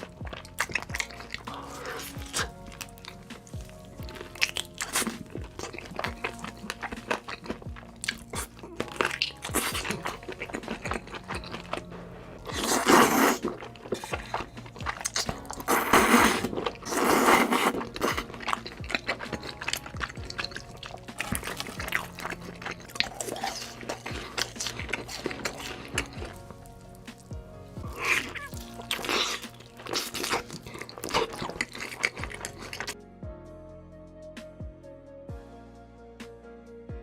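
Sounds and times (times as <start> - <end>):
loud crunching bites: 4.1 - 11.8, 12.4 - 27.3, 27.9 - 33.0
chewing clicks: 27.9 - 33.0.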